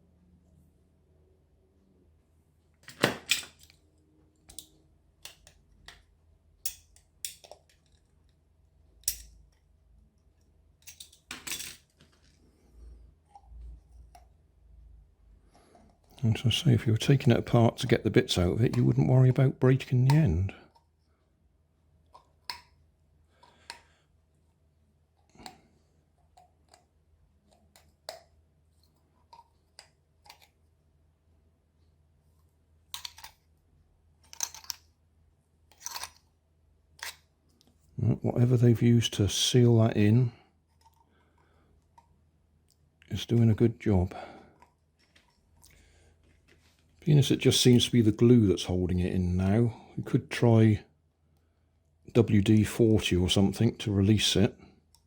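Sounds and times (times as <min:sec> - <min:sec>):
tool clicking and scraping: 0:35.7 - 0:36.3, 0:37.0 - 0:37.7.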